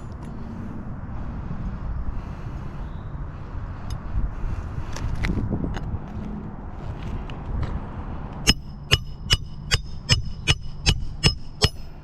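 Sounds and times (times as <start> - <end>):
wind noise: 0.0 - 12.0
hammer striking metal: 8.4 - 12.0.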